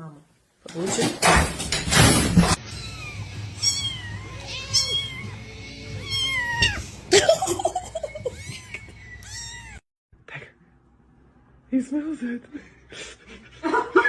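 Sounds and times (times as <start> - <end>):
cat meowing: 2.6 - 7.1, 8.2 - 9.8.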